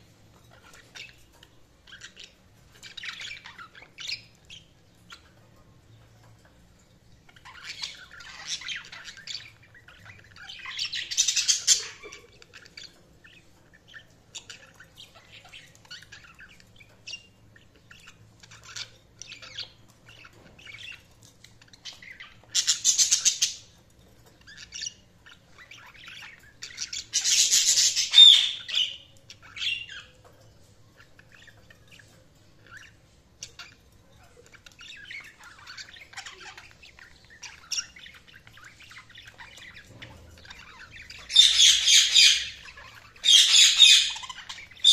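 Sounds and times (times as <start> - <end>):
budgerigars chirping: 0.3 - 6.5, 7.2 - 44.9
harsh bird squawks: 27.3 - 29.0.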